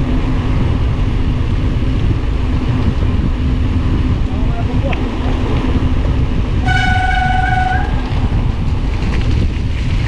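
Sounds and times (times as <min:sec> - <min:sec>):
wind rumble on microphone: 0:00.0 - 0:10.0.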